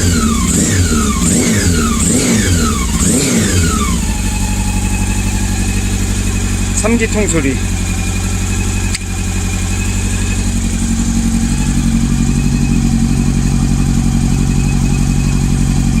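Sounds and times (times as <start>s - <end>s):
motorcycle engine idling with misfire: 0.0s - 16.0s.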